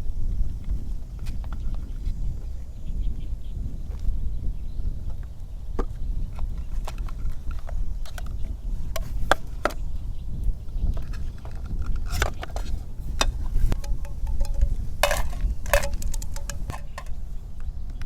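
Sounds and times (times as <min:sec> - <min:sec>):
sharp clicks and knocks: 0:11.0 - 0:17.2.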